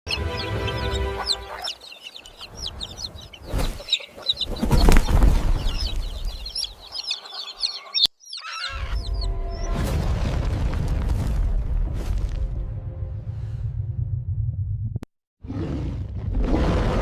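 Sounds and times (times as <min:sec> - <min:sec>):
birds chirping: 0:00.1 - 0:09.7
low rumbling bursts: 0:09.0 - 0:15.0.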